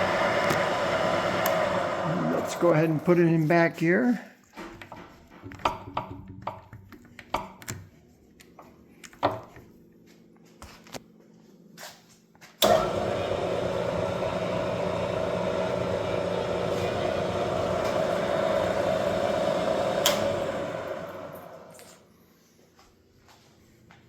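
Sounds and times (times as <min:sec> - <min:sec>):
milling machine spindle running: 0:00.0 - 0:03.8, 0:12.6 - 0:22.0.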